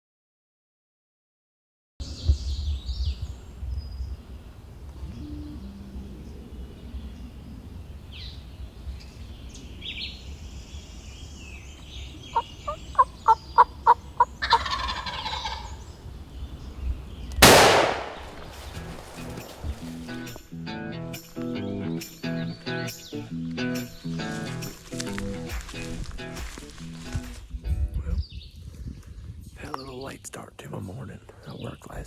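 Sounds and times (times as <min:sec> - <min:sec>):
small birds chirping: 0:02.0 - 0:20.4, 0:28.1 - 0:32.0
turkey gobbling: 0:12.2 - 0:15.8
loud sharp bang: 0:17.4 - 0:18.5.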